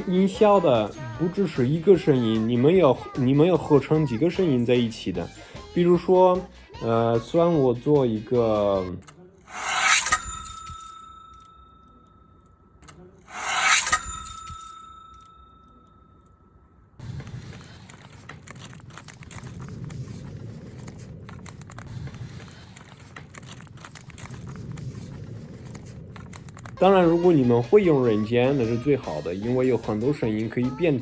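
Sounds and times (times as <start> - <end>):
rough rubbing scraping noise: 9.5 - 11.8, 13.3 - 15.6
sharp ringing strikes: 9.5 - 12.2, 13.3 - 16.3.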